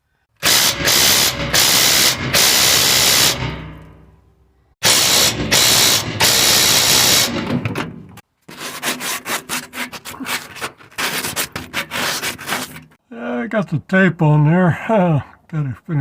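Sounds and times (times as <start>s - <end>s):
harsh scraping on exhaust pipe: 8.4s - 13.0s.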